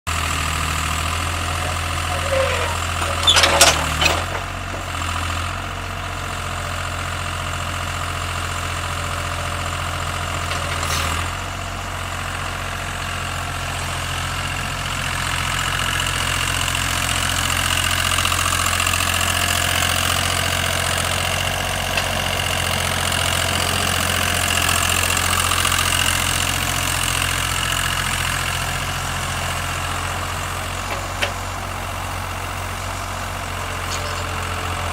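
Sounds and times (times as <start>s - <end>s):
excavator engine idling: 0.1s - 34.9s
sharp knocks and squeaks: 1.7s - 4.5s.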